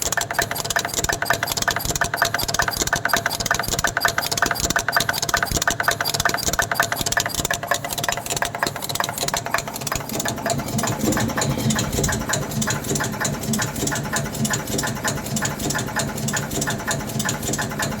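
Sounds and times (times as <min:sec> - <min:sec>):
machine clicking rapidly: 0:00.0 - 0:18.0
mechanical hum: 0:06.1 - 0:18.0.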